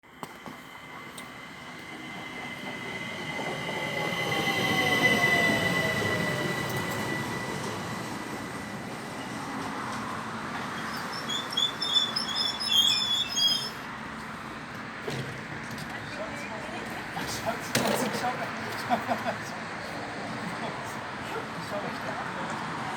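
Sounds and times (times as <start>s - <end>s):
train wheels squealing on rails: 0.2s - 14.2s.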